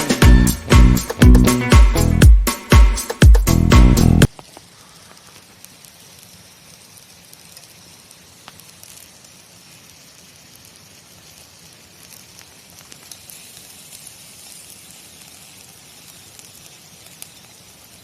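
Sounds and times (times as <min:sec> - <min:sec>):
campfire crackling: 0:04.2 - 0:18.0
soft steady hiss: 0:04.2 - 0:18.0.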